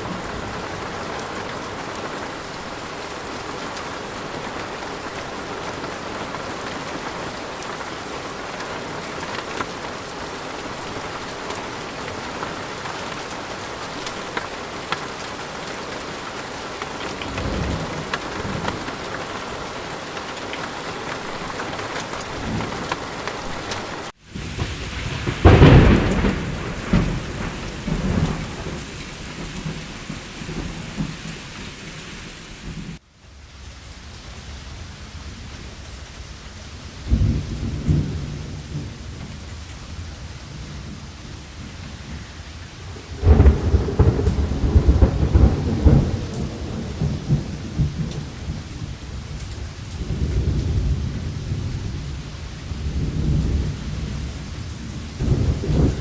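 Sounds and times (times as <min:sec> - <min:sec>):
low thunder rumbles: 0:00.0 - 0:33.0, 0:37.0 - 0:56.0
steady rain: 0:00.0 - 0:56.0
loud thunderclap: 0:23.7 - 0:31.4, 0:37.1 - 0:39.4, 0:43.2 - 0:48.9, 0:54.9 - 0:56.0.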